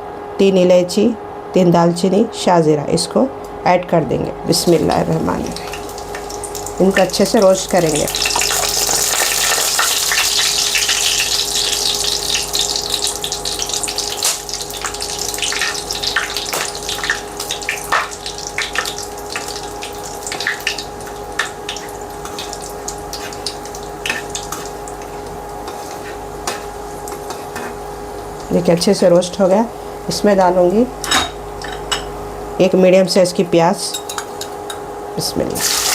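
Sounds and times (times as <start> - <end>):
steady hum: 0.0 - 35.9
spices sizzling in oil: 4.6 - 30.0, 35.5 - 35.9.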